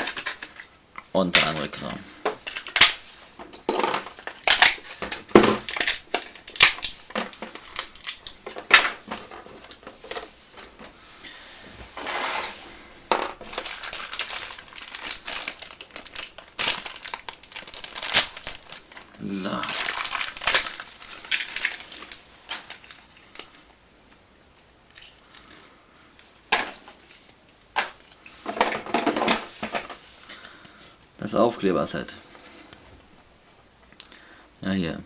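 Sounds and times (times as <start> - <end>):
plastic and paper crinkling: 0.0 - 10.9, 11.9 - 25.7.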